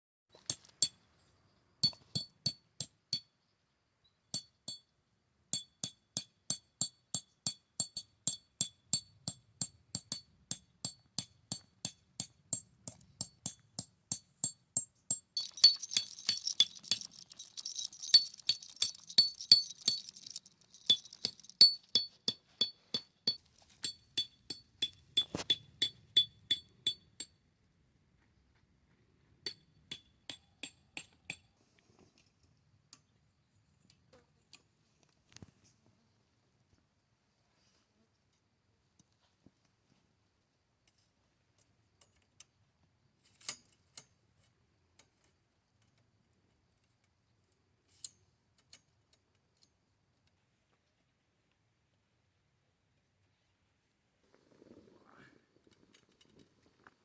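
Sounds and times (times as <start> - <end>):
light glassy clinks: 12.6 - 27.1.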